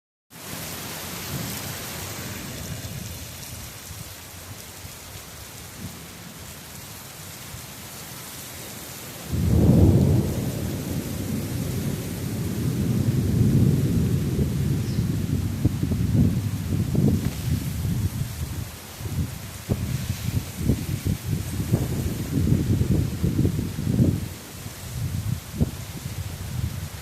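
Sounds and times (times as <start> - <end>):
heavy rain: 0.3 - 27.0
thunder crack and rumble: 9.3 - 27.0.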